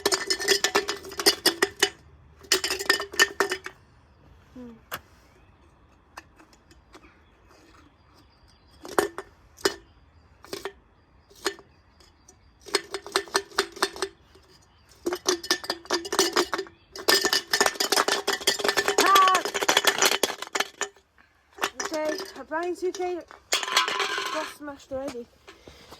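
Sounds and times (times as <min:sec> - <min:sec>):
stone rattling in washing machine: 0:15.0 - 0:21.0.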